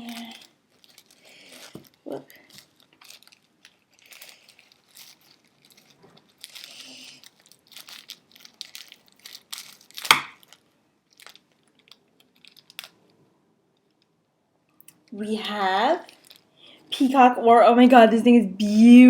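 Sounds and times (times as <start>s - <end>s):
packaging rustling and tearing: 0.0s - 13.1s, 15.0s - 16.5s.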